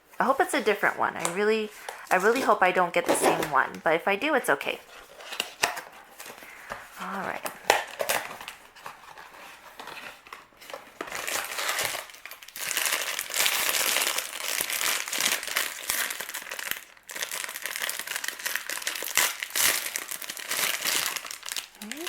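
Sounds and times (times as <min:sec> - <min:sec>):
packaging crinkling and rustling: 0:04.6 - 0:22.0.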